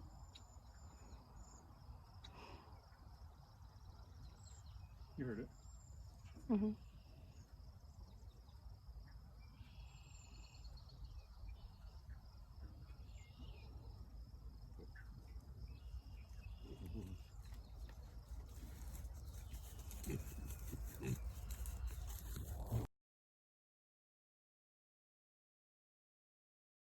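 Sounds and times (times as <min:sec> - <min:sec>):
crickets chirping: 0:00.0 - 0:22.9
pig grunts: 0:16.6 - 0:17.6, 0:19.7 - 0:22.9.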